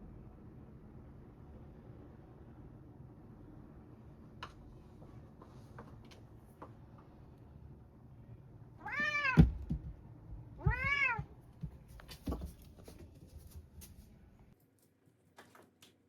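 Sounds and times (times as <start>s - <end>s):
cat meowing: 8.8s - 9.5s, 10.6s - 11.3s.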